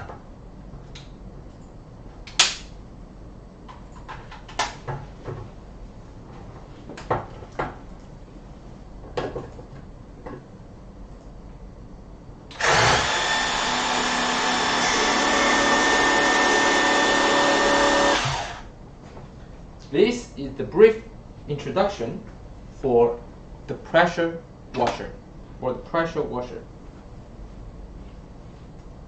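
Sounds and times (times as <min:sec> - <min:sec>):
pressure washer motor whining: 0:12.5 - 0:18.7.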